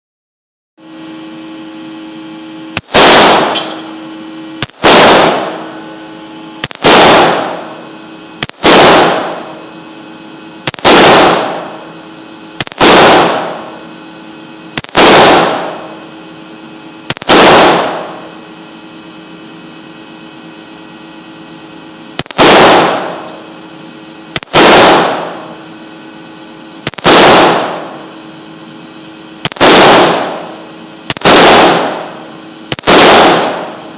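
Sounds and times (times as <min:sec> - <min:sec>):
rifle shots: 0:02.8 - 0:04.0, 0:04.6 - 0:05.9, 0:06.6 - 0:09.8, 0:10.6 - 0:12.0, 0:12.6 - 0:13.8, 0:14.8 - 0:16.0, 0:17.0 - 0:18.4, 0:22.2 - 0:23.6, 0:24.3 - 0:25.6, 0:26.8 - 0:28.2, 0:29.4 - 0:33.9.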